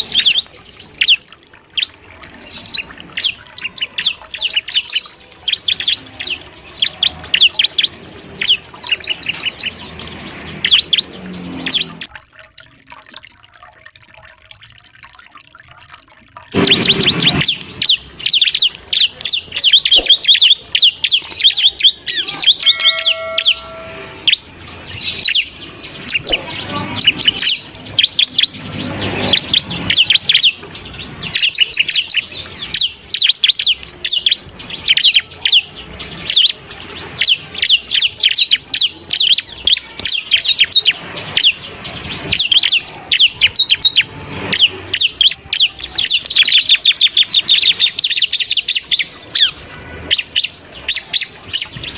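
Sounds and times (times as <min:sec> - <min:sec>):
bird chirping and trilling: 0:00.0 - 0:51.9
brief steady tone: 0:22.6 - 0:24.3.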